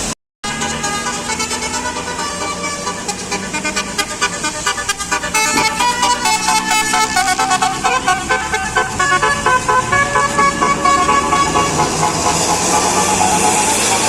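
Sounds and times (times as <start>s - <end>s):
bus horn playing melody: 0.4s - 14.0s
rushing hiss: 11.9s - 14.0s.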